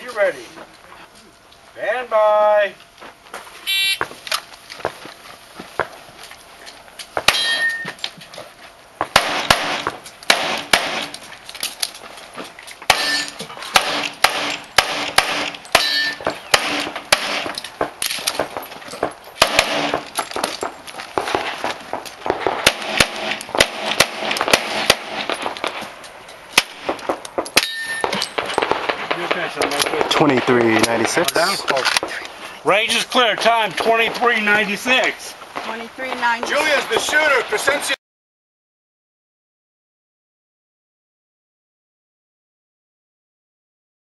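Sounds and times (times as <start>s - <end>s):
ringing metallic clangs: 7.3s - 8.0s, 12.9s - 13.5s, 15.5s - 16.9s, 27.5s - 28.6s
pistol shots: 9.1s - 11.2s, 12.9s - 20.6s, 21.2s - 25.8s, 26.5s - 31.4s.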